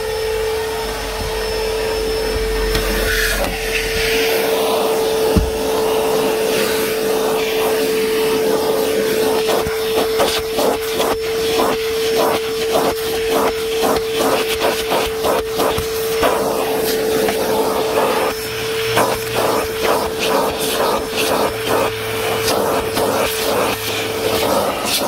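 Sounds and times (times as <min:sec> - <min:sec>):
shop vacuum whining: 0:00.0 - 0:25.0
vacuum nozzle strokes on carpet: 0:00.0 - 0:25.0
knock: 0:05.3 - 0:05.6.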